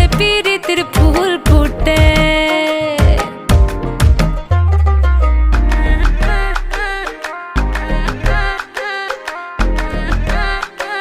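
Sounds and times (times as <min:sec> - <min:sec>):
plucked string notes: 0:00.0 - 0:08.6
deep bass note: 0:03.6 - 0:07.0.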